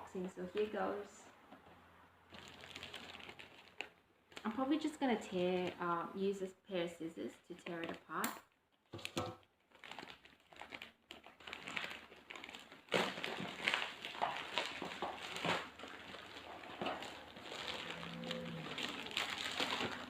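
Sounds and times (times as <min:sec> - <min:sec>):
rustling and crinkling packaging: 0:00.0 - 0:06.4, 0:07.4 - 0:20.0
packaging being cut and torn: 0:09.7 - 0:20.0.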